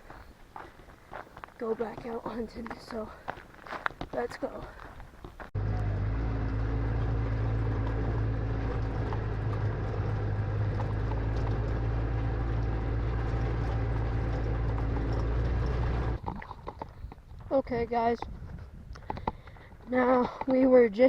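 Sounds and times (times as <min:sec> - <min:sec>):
atv engine running: 0:05.6 - 0:16.3.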